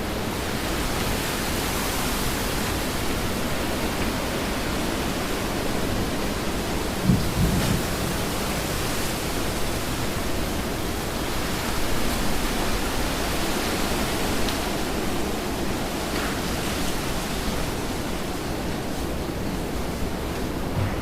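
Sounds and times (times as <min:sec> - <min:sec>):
heavy rain falling: 0:00.0 - 0:21.0
low thump: 0:20.7 - 0:21.0.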